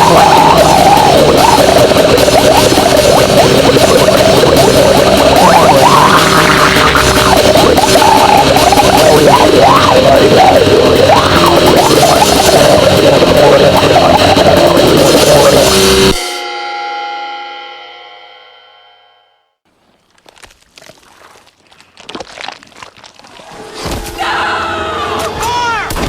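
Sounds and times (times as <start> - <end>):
distorted noise music: 0.0 - 16.4.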